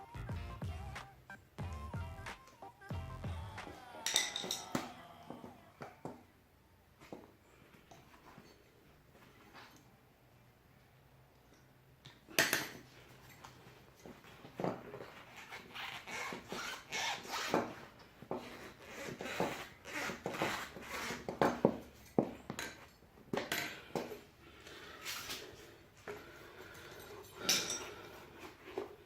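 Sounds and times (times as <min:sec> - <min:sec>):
hand tools clinking on steel: 0:04.0 - 0:05.0, 0:26.1 - 0:28.2.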